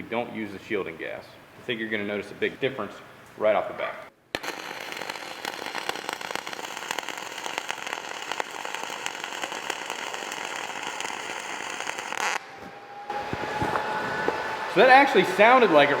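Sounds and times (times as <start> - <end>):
welding arc crackling: 4.3 - 12.4.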